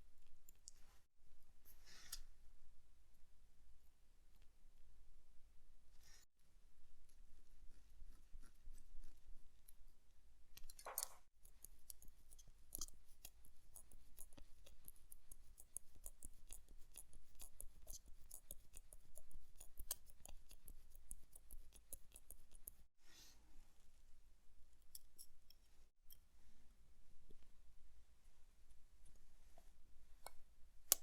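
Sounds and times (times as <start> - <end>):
metallic clicks of watch tools: 10.6 - 22.8.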